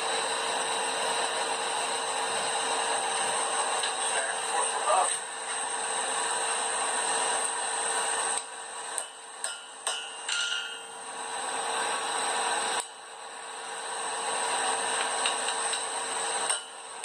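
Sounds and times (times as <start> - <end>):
forge blower rushing: 0.0 - 17.0
sharp metal taps: 9.0 - 10.9.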